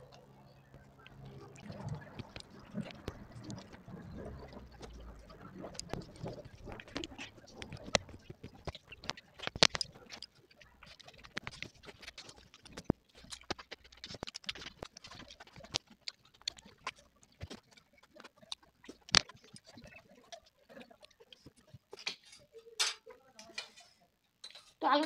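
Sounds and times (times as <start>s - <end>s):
chewing with wet mouth smacks: 0.0s - 22.2s.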